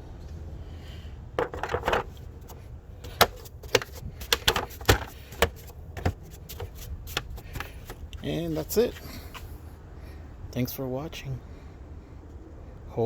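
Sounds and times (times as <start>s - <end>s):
plastic cover knocks and clicks: 1.4s - 2.2s, 3.0s - 8.0s
plastic cover scuffling: 3.1s - 8.0s.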